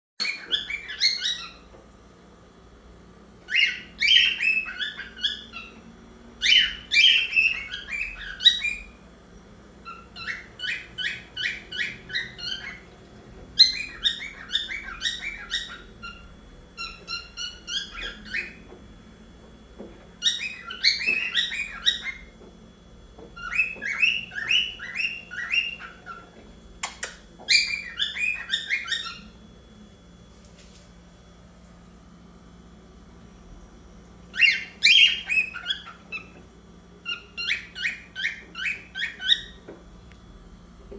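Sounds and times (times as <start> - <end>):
cockatiel chirping: 0.2 - 1.8, 3.4 - 9.0, 9.8 - 13.0, 13.6 - 18.8, 20.1 - 22.4, 23.2 - 29.4, 34.3 - 36.4, 37.0 - 39.8.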